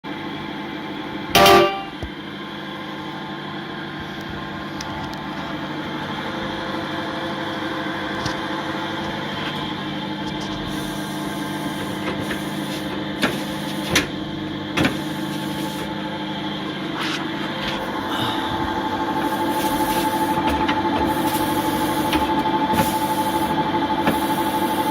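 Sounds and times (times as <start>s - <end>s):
sewing machine motor humming: 17.8s - 24.9s.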